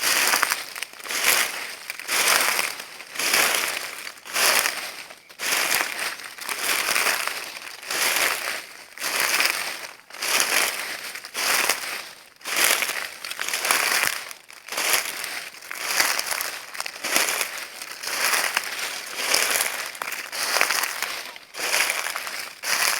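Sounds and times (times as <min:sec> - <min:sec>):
footsteps crunching dry leaves: 0:00.0 - 0:22.9.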